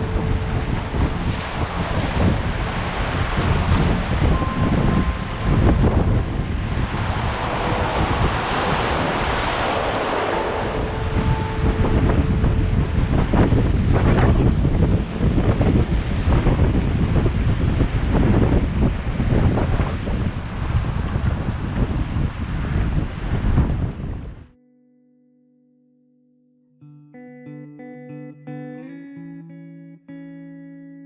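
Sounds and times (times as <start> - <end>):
river water rushing: 0.0 - 14.1
wind buffeting microphone: 0.0 - 24.5.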